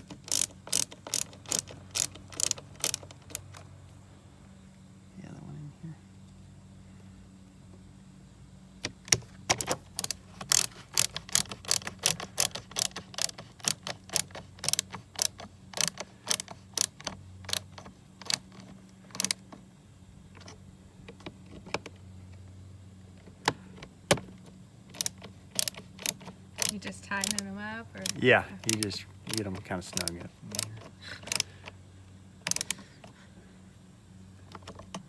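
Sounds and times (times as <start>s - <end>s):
hand tool driving screws clicking: 0.0s - 3.7s, 8.8s - 19.6s, 24.8s - 31.8s, 32.4s - 33.2s.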